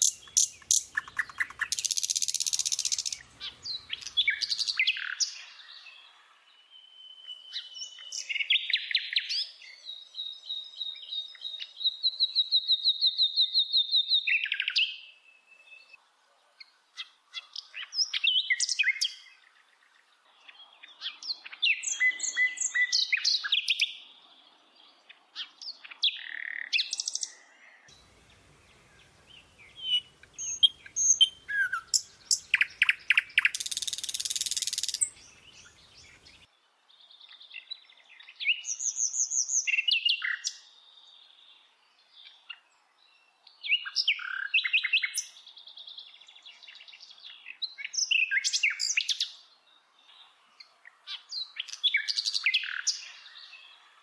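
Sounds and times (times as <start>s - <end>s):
bird chirping and trilling: 0.0s - 6.0s, 6.8s - 16.0s, 20.5s - 24.0s, 25.4s - 36.5s, 51.1s - 53.8s.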